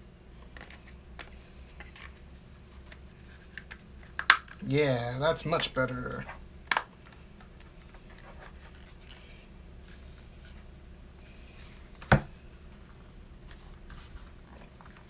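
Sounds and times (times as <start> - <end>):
plastic parts rubbing and scraping: 0.5 - 4.6, 7.0 - 12.1.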